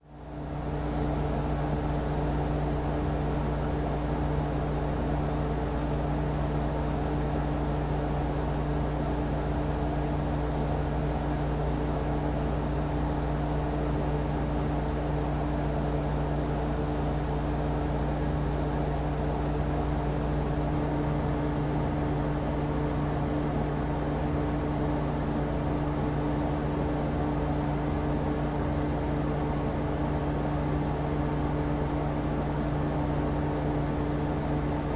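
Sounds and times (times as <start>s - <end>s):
air conditioner humming: 12.4s - 34.9s.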